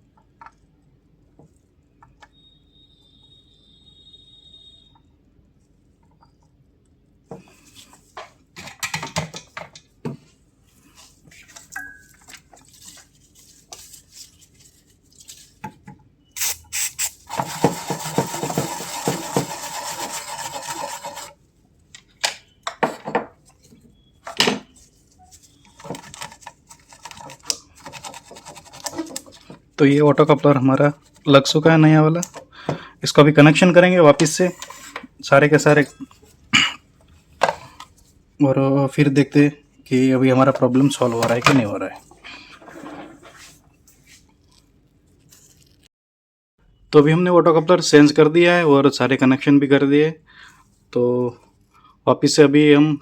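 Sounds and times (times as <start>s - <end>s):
scraping and rubbing: 17.3s - 21.4s, 24.9s - 29.5s, 34.2s - 35.1s, 40.5s - 45.9s.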